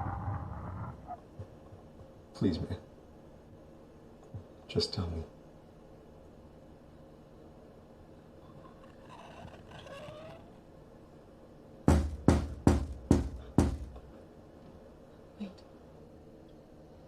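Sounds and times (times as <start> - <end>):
heavy bangs on a door: 11.9 - 14.0.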